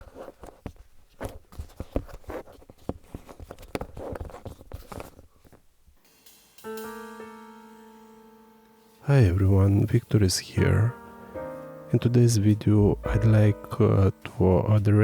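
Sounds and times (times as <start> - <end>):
scratchy handling noises: 0.0 - 5.8
sustained piano-like note: 6.6 - 10.0, 10.8 - 14.4
background music: 6.6 - 15.0.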